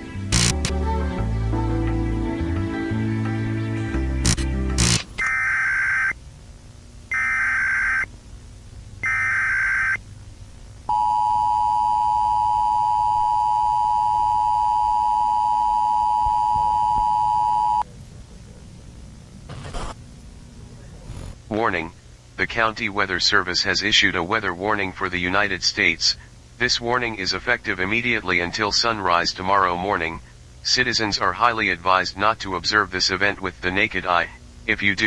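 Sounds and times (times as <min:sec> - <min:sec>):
data bursts: 0:04.3 - 0:06.2, 0:07.1 - 0:08.1, 0:09.0 - 0:10.0
two-tone attention signal: 0:10.9 - 0:17.8.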